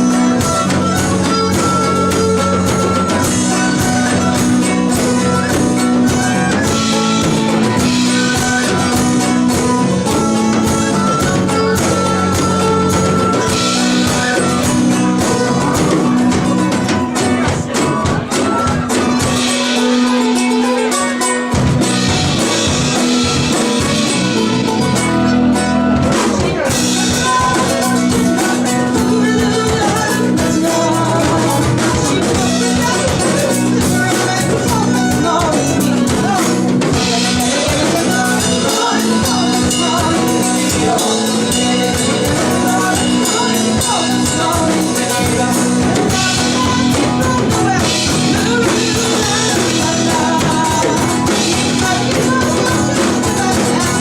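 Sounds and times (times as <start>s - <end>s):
live band playing folk song: 0.0s - 54.0s.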